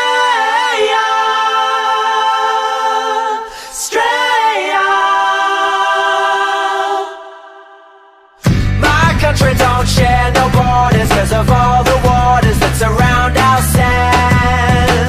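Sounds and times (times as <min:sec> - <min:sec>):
a cappella voices singing chords: 0:00.0 - 0:15.0.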